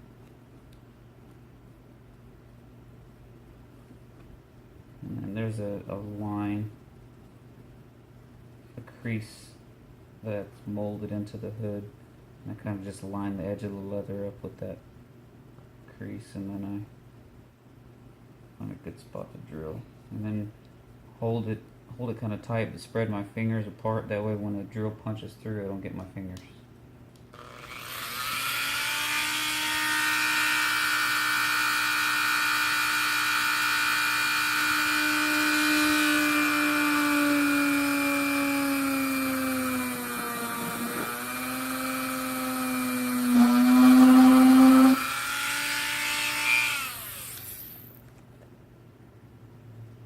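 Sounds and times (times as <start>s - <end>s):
electric drill drilling: 27.4s - 48.0s.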